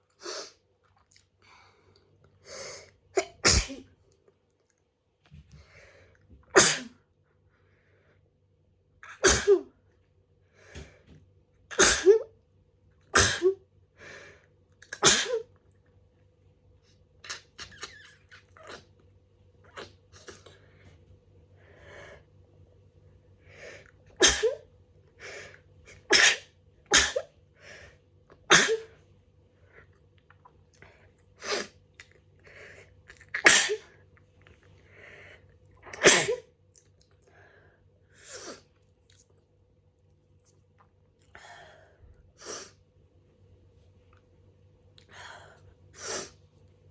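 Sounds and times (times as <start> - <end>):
person sneezing: 3.2 - 3.9, 6.5 - 7.0, 9.1 - 9.7, 11.7 - 12.3, 13.2 - 13.6, 14.9 - 15.5, 24.2 - 24.6, 25.9 - 27.3, 28.5 - 28.9, 33.3 - 33.9, 35.9 - 36.5.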